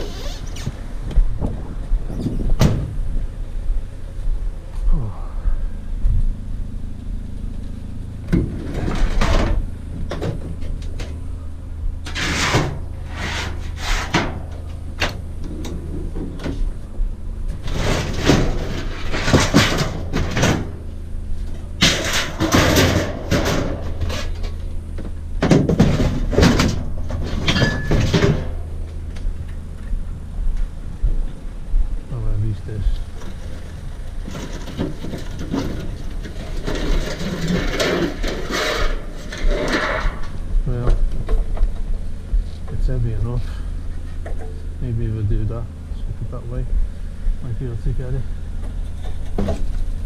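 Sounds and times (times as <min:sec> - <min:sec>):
vehicle engine idling: 0:00.0 - 0:50.0
scrap metal clattering: 0:12.0 - 0:16.8, 0:17.5 - 0:24.7, 0:25.4 - 0:28.8, 0:33.0 - 0:40.4.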